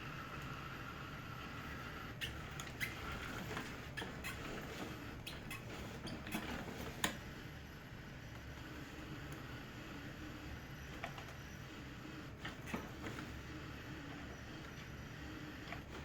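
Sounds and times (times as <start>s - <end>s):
sharp clicks and squeaks: 2.2s - 7.2s.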